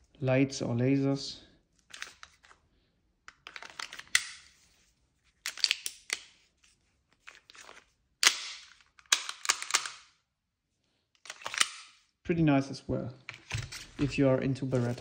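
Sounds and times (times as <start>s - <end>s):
pistol handling clicks and clacks: 3.3s - 4.4s, 8.2s - 10.2s, 11.2s - 12.0s.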